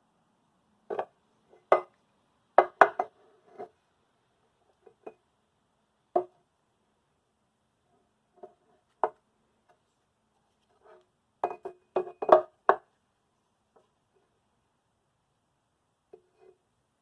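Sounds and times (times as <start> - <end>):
hard objects knocking and clattering: 0.9 - 2.0, 2.6 - 3.8, 11.4 - 12.9.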